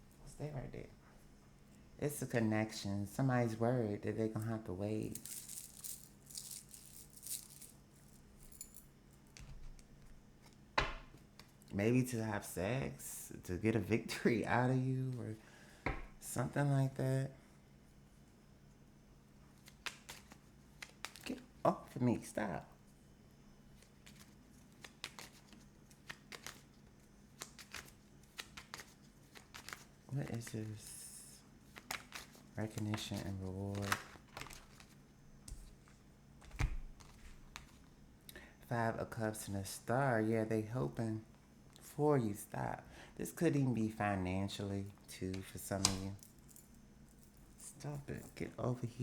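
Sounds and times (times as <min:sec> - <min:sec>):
low steady hum: 0:00.0 - 0:49.0
small objects clicking and rustling: 0:05.0 - 0:09.9
cards flicking and shuffling: 0:19.6 - 0:21.4, 0:23.8 - 0:26.7, 0:27.3 - 0:30.6, 0:31.6 - 0:37.9, 0:45.3 - 0:46.2.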